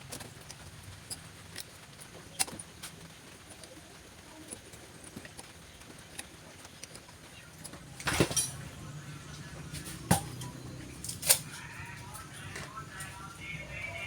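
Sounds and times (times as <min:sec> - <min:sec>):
low steady hum: 0:07.2 - 0:14.0.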